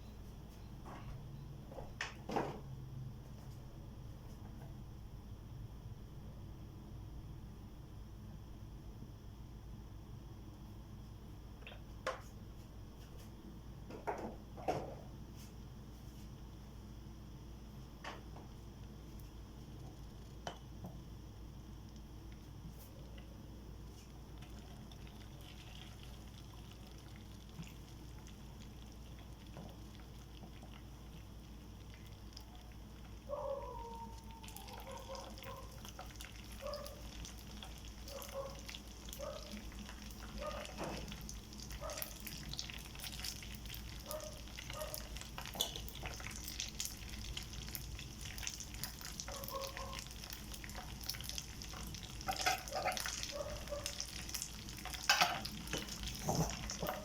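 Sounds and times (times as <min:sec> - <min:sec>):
rice sizzling in a pan: 0:23.8 - 0:33.3, 0:34.5 - 0:57.0
clicks and scrapes of stirring: 0:51.7 - 0:53.3.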